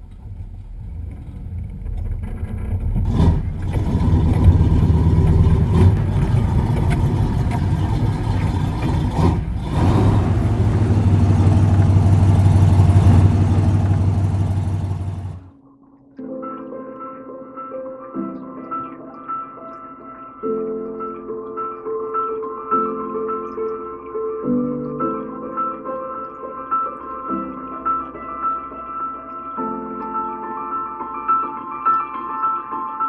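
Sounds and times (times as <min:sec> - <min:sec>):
off-road vehicle engine running: 0:00.0 - 0:15.5
music: 0:15.5 - 0:33.0.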